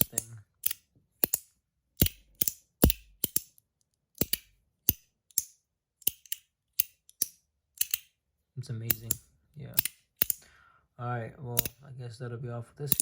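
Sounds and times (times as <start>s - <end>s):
metal slider fidget clicking: 0.0s - 3.6s, 4.2s - 8.1s, 8.9s - 9.2s, 9.8s - 10.4s.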